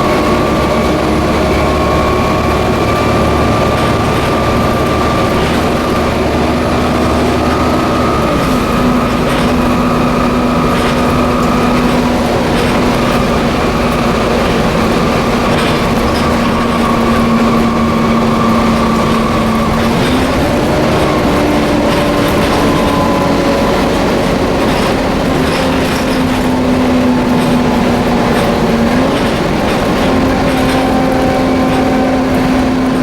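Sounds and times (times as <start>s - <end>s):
bus engine whine: 0.0s - 33.0s
road noise and rattles: 0.0s - 33.0s.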